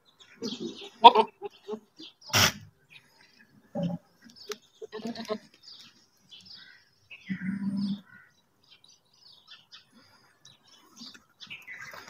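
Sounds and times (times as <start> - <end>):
small birds chirping: 0.0 - 12.0
goat bleating: 4.8 - 5.5.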